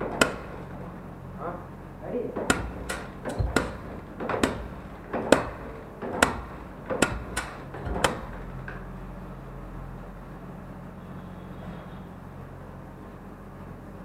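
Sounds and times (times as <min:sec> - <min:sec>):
engine knocking clacks on starter: 0:00.0 - 0:00.9, 0:02.4 - 0:08.9.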